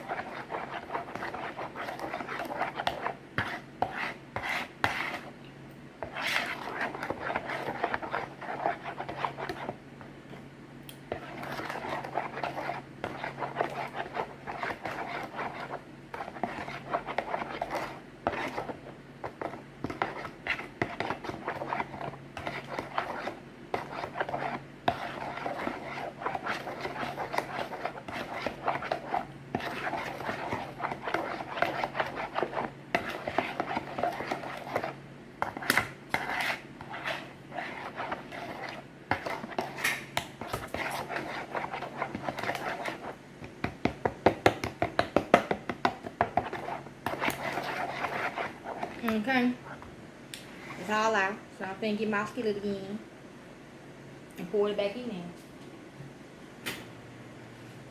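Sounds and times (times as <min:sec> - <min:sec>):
spoon scraping a bowl: 0:00.0 - 0:05.4, 0:06.0 - 0:09.8, 0:11.1 - 0:43.2, 0:45.9 - 0:49.8
steady low hum: 0:00.0 - 0:57.9.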